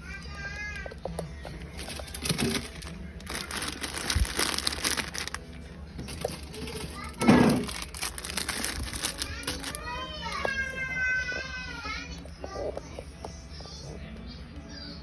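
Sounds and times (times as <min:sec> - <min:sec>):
plastic packaging crinkling: 0:00.7 - 0:11.2.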